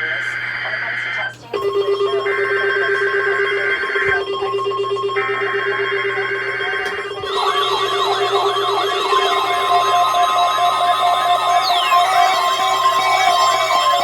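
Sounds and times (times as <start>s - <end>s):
steady warning alarm tone: 0.0s - 14.0s
buzzy digital data bursts: 6.6s - 14.0s
warbling tone: 6.6s - 14.0s.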